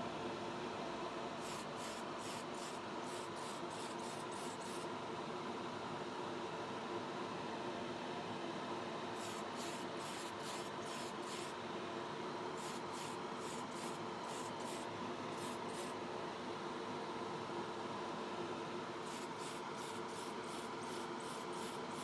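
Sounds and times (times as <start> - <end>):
spray paint hiss: 1.4 - 4.9, 9.2 - 11.6, 12.6 - 16.0, 19.0 - 22.0
steady hum: 9.2 - 11.8, 12.5 - 16.0, 19.0 - 22.0.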